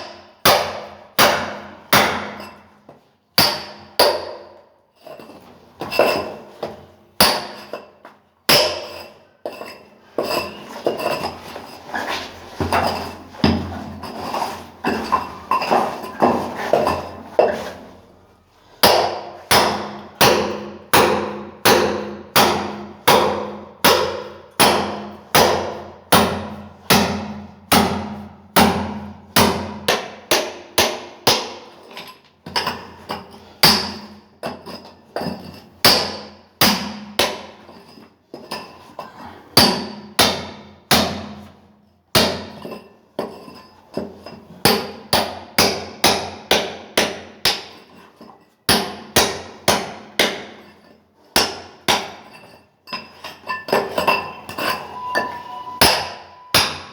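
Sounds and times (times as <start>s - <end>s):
hammer breaking concrete: 0.0s - 2.7s, 3.4s - 4.5s, 7.2s - 7.9s, 8.5s - 11.2s, 18.8s - 41.5s, 42.1s - 48.0s, 48.7s - 56.9s.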